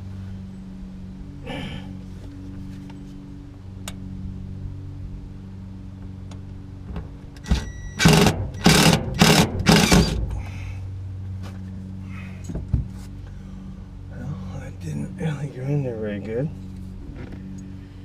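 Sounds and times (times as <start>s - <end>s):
steady low hum: 0.0s - 18.0s
power drill driving screw: 8.0s - 10.2s.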